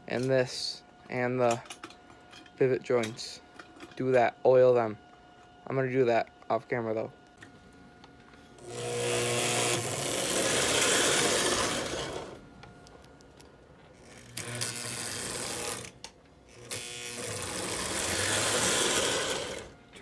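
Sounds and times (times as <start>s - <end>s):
toy train motor whirring: 8.6s - 12.4s, 14.0s - 19.8s.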